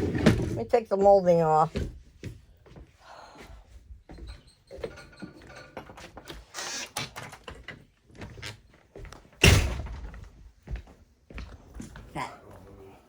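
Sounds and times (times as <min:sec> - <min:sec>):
loud thump: 0:09.4 - 0:10.2.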